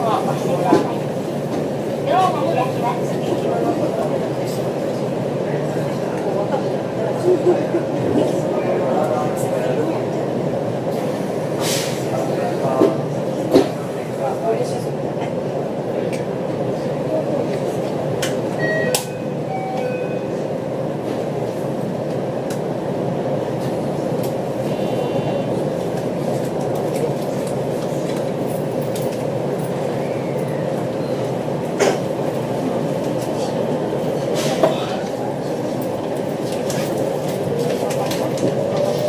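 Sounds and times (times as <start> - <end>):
faint train whine: 15.9 - 39.0.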